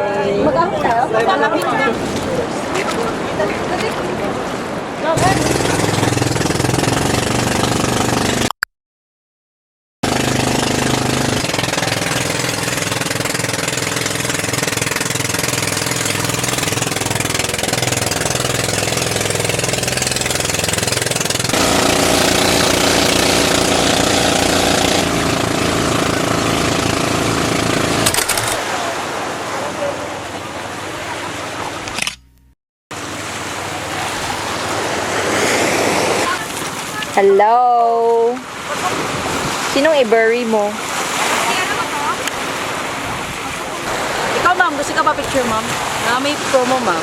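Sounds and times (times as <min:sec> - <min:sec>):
motor engine running: 0:05.2 - 0:08.5, 0:10.0 - 0:28.8.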